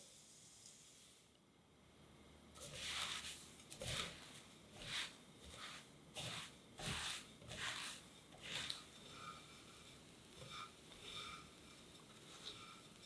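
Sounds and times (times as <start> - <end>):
dry pastry rustling and crackling: 2.6 - 13.0.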